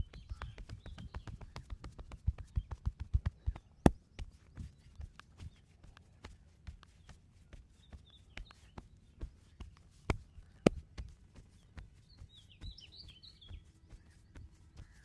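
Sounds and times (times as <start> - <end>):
birds chirping: 0.0 - 2.8, 11.4 - 15.0
hands tapping body in massage: 0.0 - 5.3, 9.6 - 11.1.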